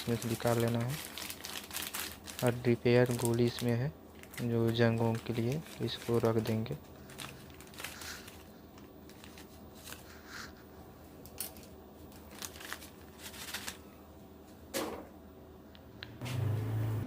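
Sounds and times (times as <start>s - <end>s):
packaging rustling: 0.0s - 10.5s, 11.3s - 13.9s.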